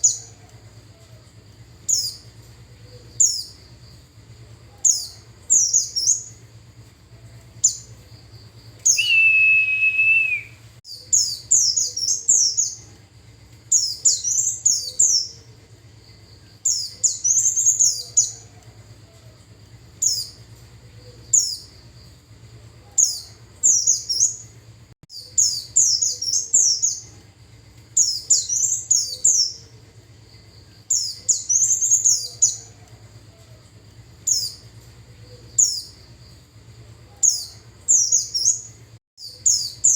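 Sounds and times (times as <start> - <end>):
high bird twittering: 8.9 - 12.8.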